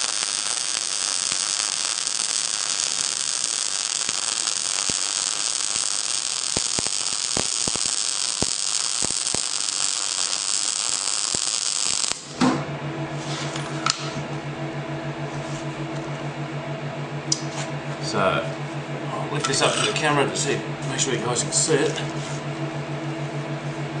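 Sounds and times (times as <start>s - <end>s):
welding arc hissing and crackling: 0.0s - 12.4s
welding machine electrical hum: 0.0s - 24.0s.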